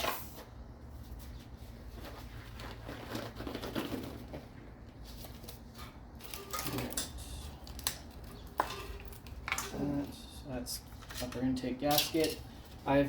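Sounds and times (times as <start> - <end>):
parts clicking and rustling: 2.5 - 10.2.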